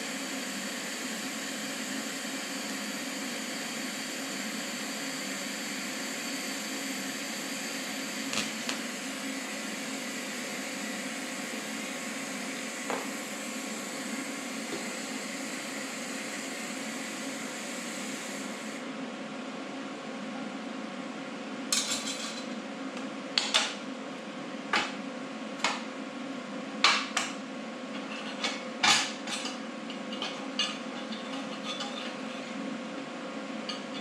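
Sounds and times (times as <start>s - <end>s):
welding arc buzzing hiss: 0.0s - 18.8s.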